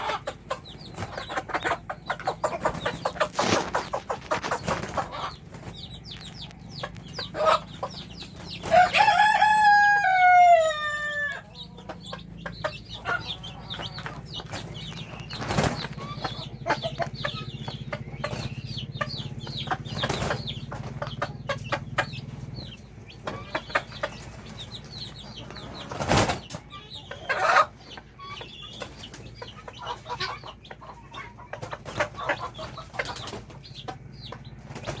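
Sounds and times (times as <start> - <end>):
chicks peeping: 0.0 - 35.0
hen clucking: 0.0 - 35.0
rooster crowing: 8.7 - 11.5.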